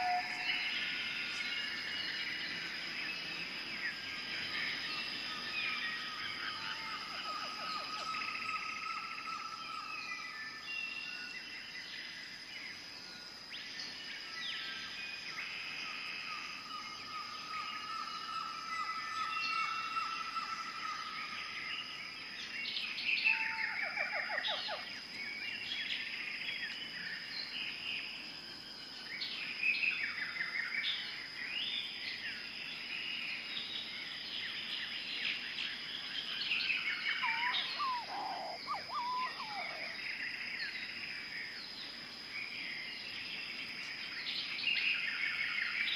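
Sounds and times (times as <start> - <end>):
birds calling and chirping: 0.0 - 11.1, 33.6 - 42.0
bird trills: 37.2 - 40.0.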